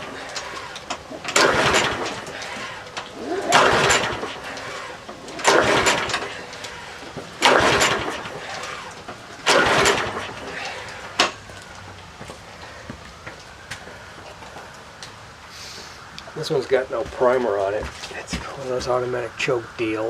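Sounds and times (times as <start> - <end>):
lawn mower recoil starter pulls: 0.0 - 11.4.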